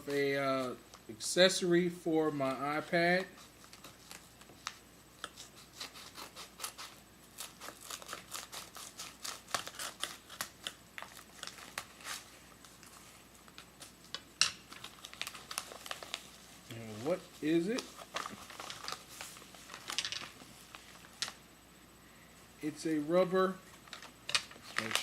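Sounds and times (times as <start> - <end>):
packaging being handled: 7.4 - 21.4, 23.7 - 25.0.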